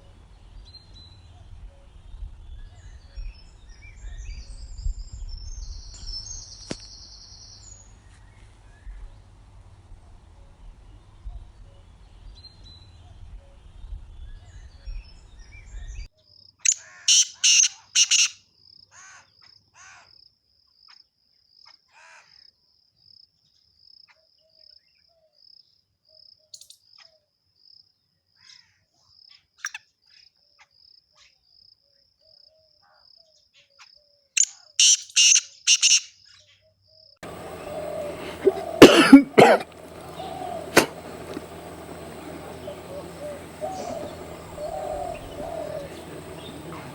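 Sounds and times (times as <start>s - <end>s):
bird calling quick notes: 16.7s - 18.4s, 34.4s - 36.1s, 37.3s - 46.9s.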